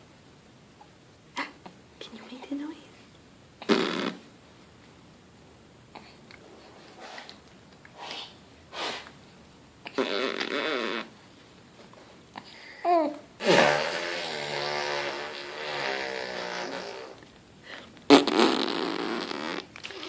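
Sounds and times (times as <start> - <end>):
toddler blowing raspberries: 12.9 - 17.2, 18.1 - 20.0.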